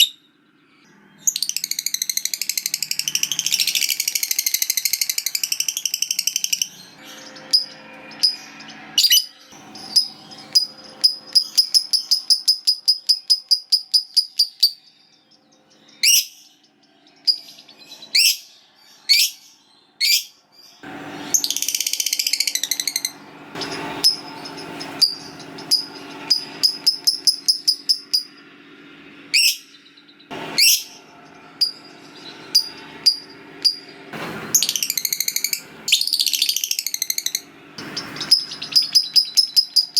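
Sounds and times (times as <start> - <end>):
shrill bird calls: 0.0 - 28.4, 29.2 - 33.9, 34.6 - 39.9
lovebird chattering: 1.2 - 14.9, 15.9 - 16.5, 17.2 - 20.3, 21.4 - 28.4, 29.3 - 29.8, 30.6 - 31.0, 31.6 - 33.9, 34.6 - 39.9
harsh bird screech: 30.3 - 31.1.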